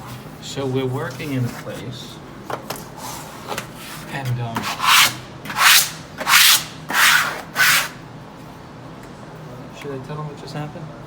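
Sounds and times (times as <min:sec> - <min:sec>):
rubbing against wallpaper: 0:03.0 - 0:08.0.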